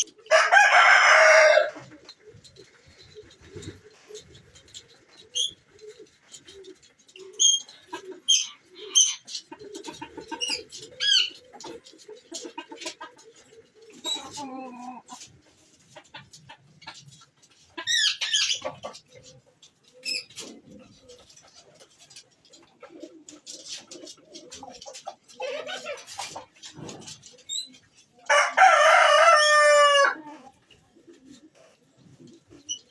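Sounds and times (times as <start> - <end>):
birds chirping: 0.0 - 15.1, 16.3 - 30.0
chickens clucking: 0.0 - 32.9
low cooing: 13.3 - 15.2.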